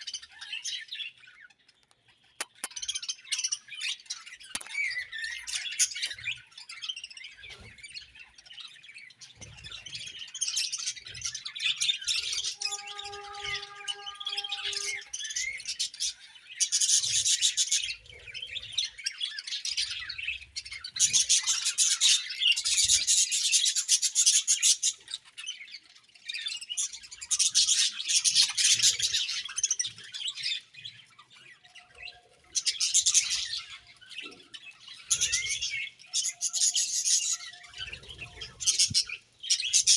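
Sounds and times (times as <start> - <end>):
budgerigars chirping and warbling: 0.0 - 39.9.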